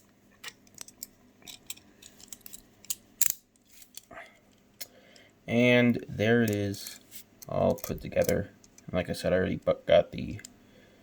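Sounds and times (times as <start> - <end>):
toy parts clicking and snapping: 0.4 - 4.1, 6.4 - 8.9.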